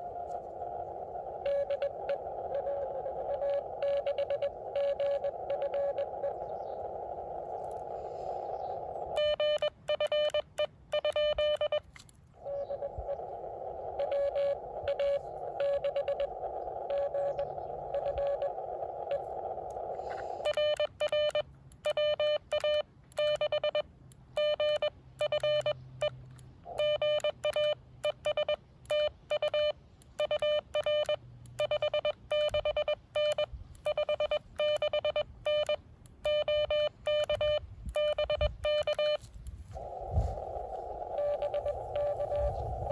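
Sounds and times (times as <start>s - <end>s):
loud morse code sidetone beeps: 1.4s - 6.4s, 9.1s - 11.9s, 14.0s - 19.2s, 20.4s - 25.8s, 26.7s - 39.3s, 41.0s - 42.9s
faint morse code beeping: 1.4s - 6.9s, 9.0s - 12.0s, 14.0s - 19.4s, 20.1s - 42.9s
radio receiver hiss: 38.9s - 42.9s.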